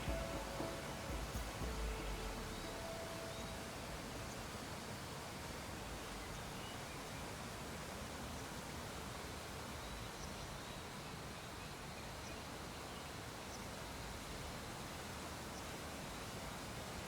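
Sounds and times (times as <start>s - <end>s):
faint high chirps: 0.0s - 4.4s
faint background hiss: 0.0s - 17.0s.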